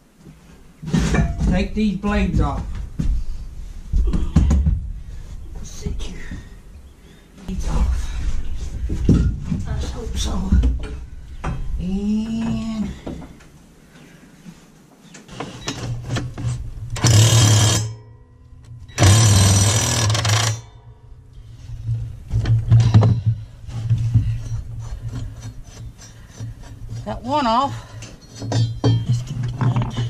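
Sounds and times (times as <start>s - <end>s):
tool rattling and scraping: 15.2s - 18.0s, 18.8s - 20.8s, 21.4s - 30.0s
impact tool hammering: 19.0s - 20.9s.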